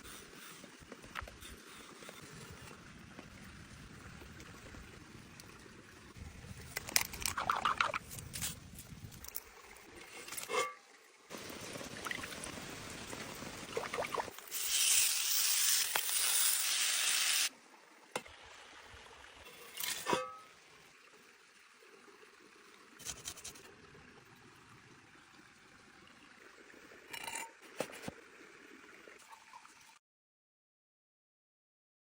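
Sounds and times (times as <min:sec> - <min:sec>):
food sizzling: 0:11.3 - 0:17.5.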